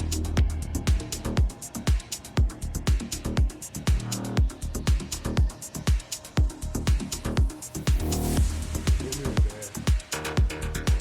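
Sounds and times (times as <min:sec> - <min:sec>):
electronic dance music: 0:00.0 - 0:11.0.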